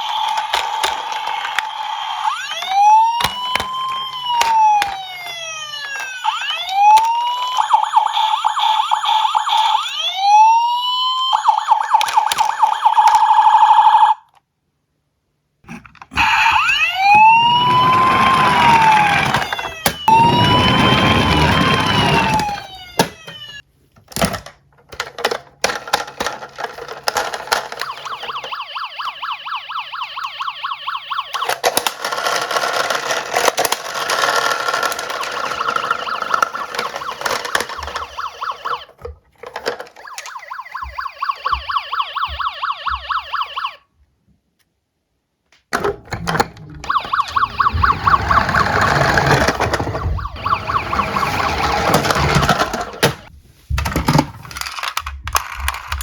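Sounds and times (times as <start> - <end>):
toy cars clicking down a slope: 0.0 - 7.9, 16.3 - 23.6, 31.3 - 38.8, 54.1 - 56.0
siren warbling: 0.0 - 14.2, 16.1 - 23.6, 27.7 - 31.6, 34.0 - 39.0, 39.9 - 43.8, 46.4 - 53.3.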